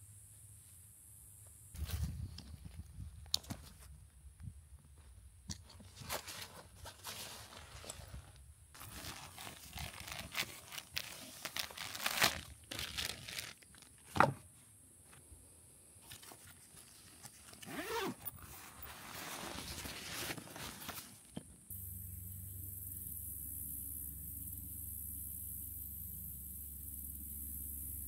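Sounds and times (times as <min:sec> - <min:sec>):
crinkling and rustling: 0:05.0 - 0:15.2, 0:16.0 - 0:21.5.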